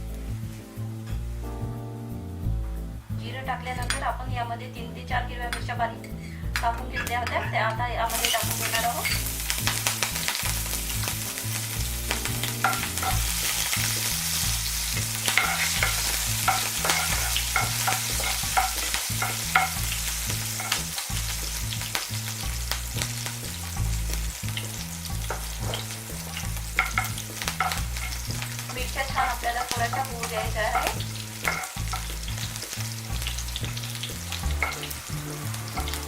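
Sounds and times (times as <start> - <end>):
chillies sizzling in hot oil: 0.0 - 36.0
spoon clicking against pan: 12.6 - 13.2, 15.2 - 19.8, 26.8 - 28.2, 30.8 - 32.1.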